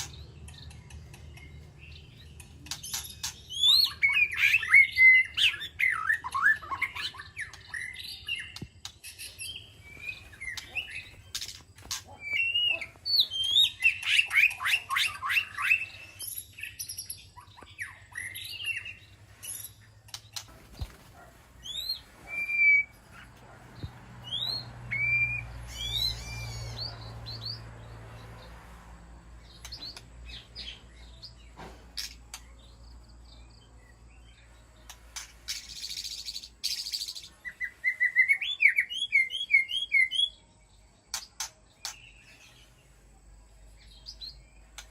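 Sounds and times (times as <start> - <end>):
bird singing whistled notes: 0.9 - 11.2, 12.1 - 19.8, 21.6 - 23.0, 24.2 - 27.6, 35.5 - 40.5.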